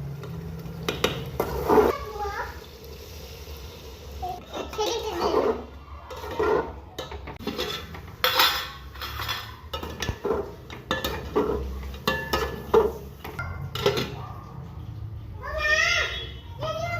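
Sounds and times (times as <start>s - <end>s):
metal spoon scraping cooking pot: 4.8s - 13.0s.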